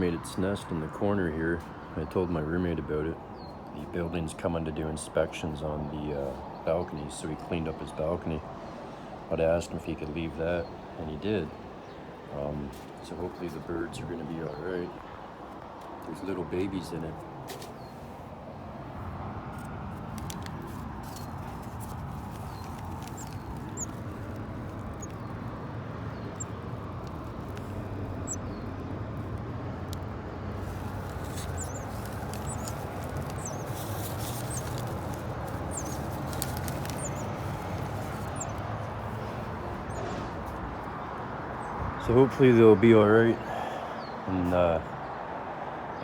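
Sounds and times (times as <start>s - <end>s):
distant traffic hum: 0.0s - 46.0s
nestling birds cheeping: 7.4s - 44.4s.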